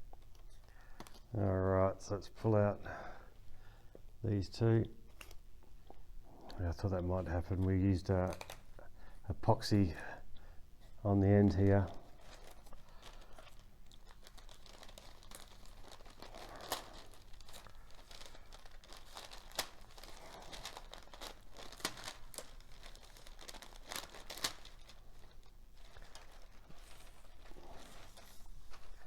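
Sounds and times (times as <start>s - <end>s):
paper crinkling and tearing: 7.5s - 8.7s, 11.3s - 29.0s.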